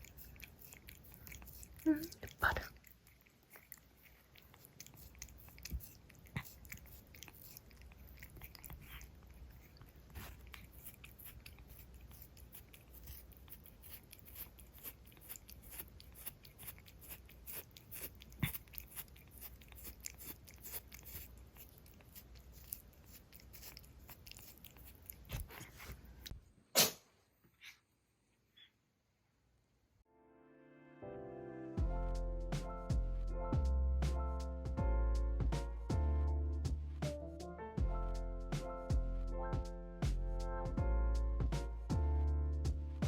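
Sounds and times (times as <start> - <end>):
pet licking and nibbling: 0.0 - 26.4.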